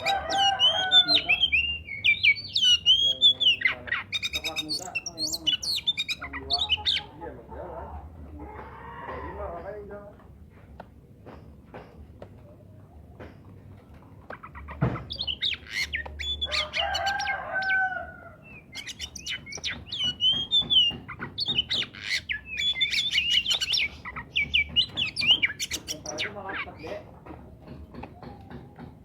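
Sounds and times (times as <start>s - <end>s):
bird singing whistles and chirps: 0.0s - 7.1s, 15.0s - 17.8s, 18.4s - 26.4s.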